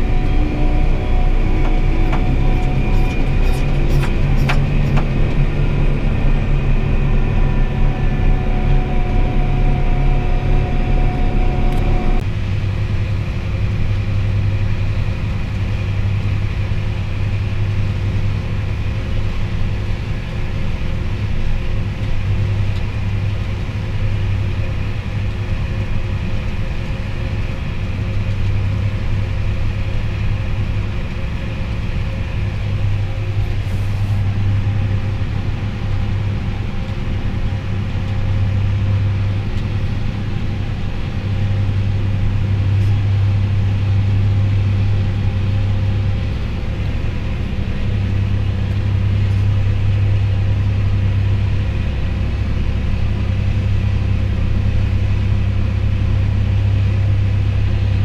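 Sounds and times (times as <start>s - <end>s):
steady low hum: 0.0s - 58.0s
truck engine running: 0.0s - 58.0s.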